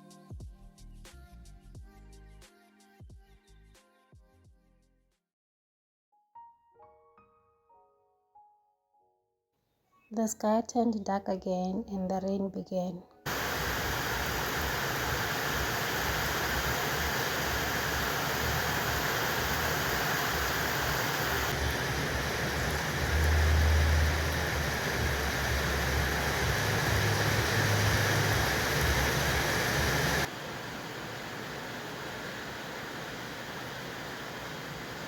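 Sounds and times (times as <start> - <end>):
rain falling: 13.3 - 35.0.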